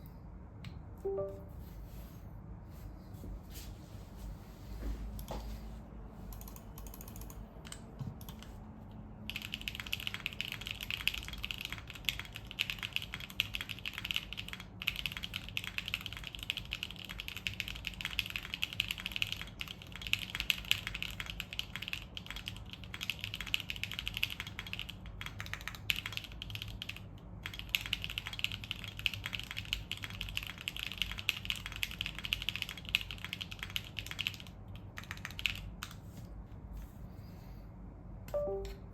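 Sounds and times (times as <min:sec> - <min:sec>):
mechanical keyboard typing: 0:06.3 - 0:08.6, 0:09.3 - 0:36.0.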